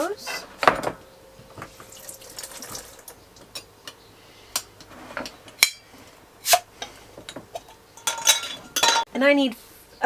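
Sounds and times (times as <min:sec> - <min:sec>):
glass jar and utensils clinking: 0:07.6 - 0:09.1.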